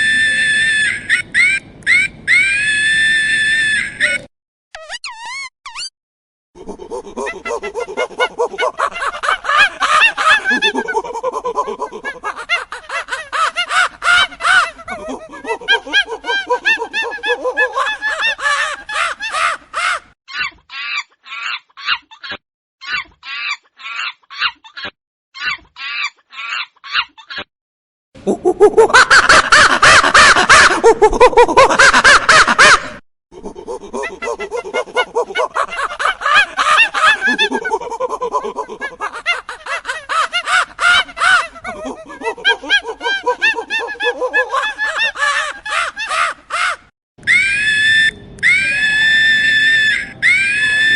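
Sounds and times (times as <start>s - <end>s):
monkeys screaming: 0.0s - 5.9s, 6.6s - 27.4s, 28.3s - 50.9s
monkeys shrieking and chattering: 6.6s - 27.4s, 33.4s - 50.9s.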